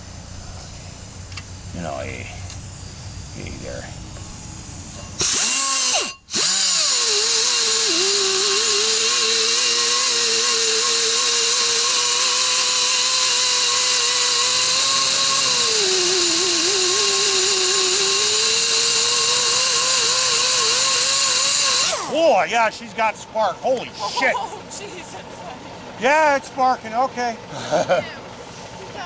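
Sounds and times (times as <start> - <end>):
power drill whining: 4.0 - 22.4.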